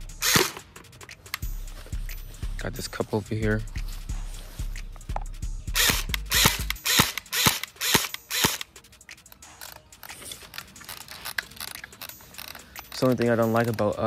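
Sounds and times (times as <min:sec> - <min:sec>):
airsoft gun firing: 0:00.2 - 0:00.7, 0:05.8 - 0:08.6.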